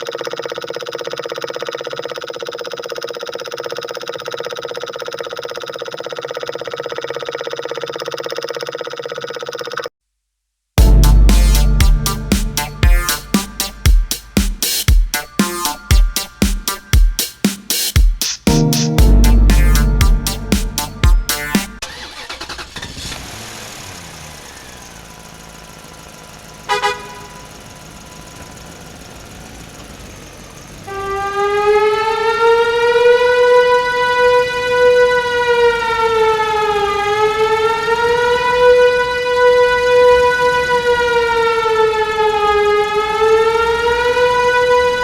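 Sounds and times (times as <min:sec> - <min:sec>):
fire truck siren wailing: 0:30.8 - 0:45.0.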